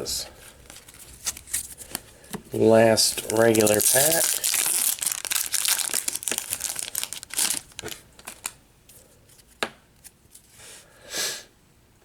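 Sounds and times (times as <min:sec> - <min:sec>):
card wrapper tearing and crinkling: 0:00.6 - 0:08.6.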